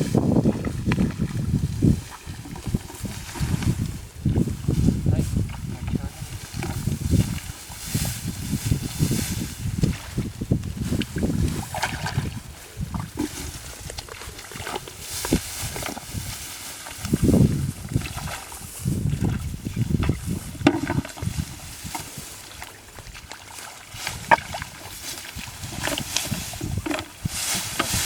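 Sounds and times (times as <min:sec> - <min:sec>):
mud and water squelching: 0:00.0 - 0:28.0
small clicks and splashes: 0:12.9 - 0:16.0.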